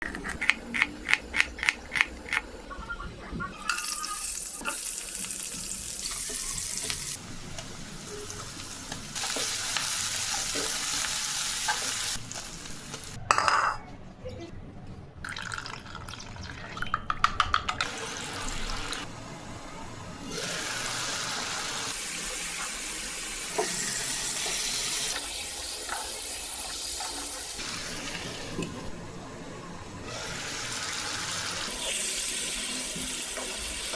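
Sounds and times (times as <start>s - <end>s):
oil sizzling in a pan: 3.7s - 13.2s, 20.3s - 28.6s, 30.1s - 33.9s.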